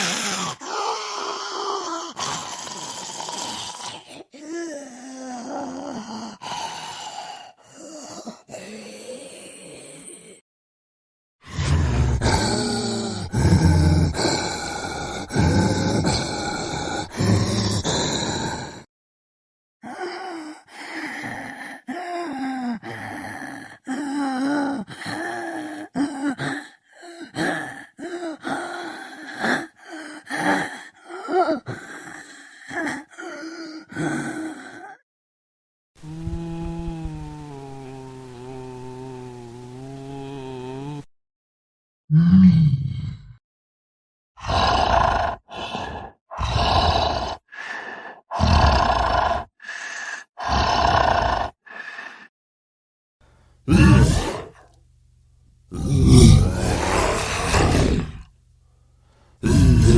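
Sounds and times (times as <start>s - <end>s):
raspy breaths: 0.0s - 10.4s, 19.8s - 35.0s, 45.4s - 48.4s, 49.4s - 50.6s, 51.5s - 52.3s, 55.8s - 59.9s
zombie moans and groans: 0.0s - 10.4s, 11.4s - 18.9s, 19.8s - 35.0s, 36.0s - 41.1s, 42.1s - 43.4s, 44.4s - 52.3s, 53.7s - 54.8s, 55.7s - 58.3s, 59.4s - 59.9s
zombie voice growling and groaning: 11.4s - 18.8s, 44.4s - 52.2s, 53.7s - 54.8s, 55.7s - 58.3s, 59.4s - 59.9s.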